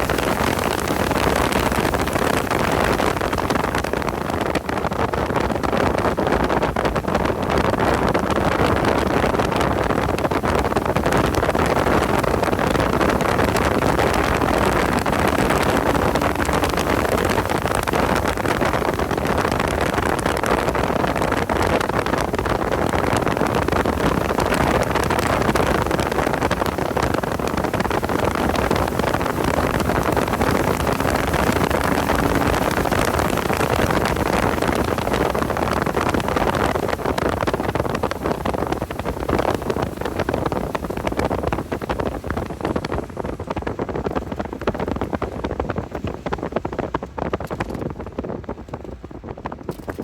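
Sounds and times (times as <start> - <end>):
wind and road noise: 0.0 - 50.0
car engine at speed: 9.9 - 46.0.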